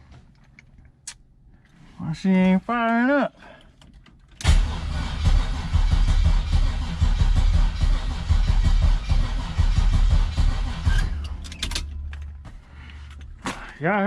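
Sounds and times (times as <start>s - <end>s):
engine cranking without starting: 3.8s - 12.3s.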